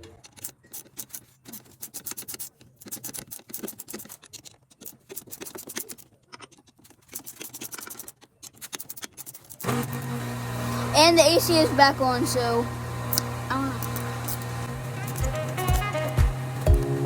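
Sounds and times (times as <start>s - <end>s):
ratchet wrench clicking and scraping: 0.0s - 10.1s, 13.1s - 16.4s.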